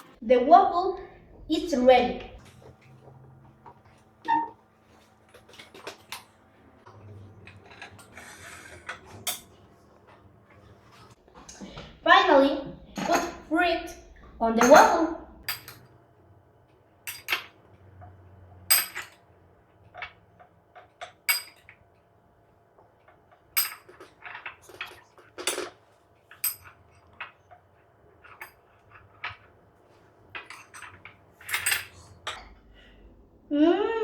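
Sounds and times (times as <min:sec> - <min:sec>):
cutlery clinking on a plate: 0:07.5 - 0:09.6, 0:14.6 - 0:15.8, 0:17.1 - 0:17.5, 0:20.8 - 0:21.8, 0:23.6 - 0:27.3, 0:30.4 - 0:32.6.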